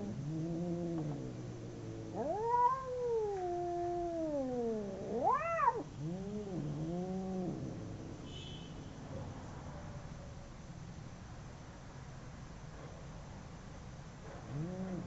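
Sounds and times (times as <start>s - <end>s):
cats yowling: 2.0s - 7.8s.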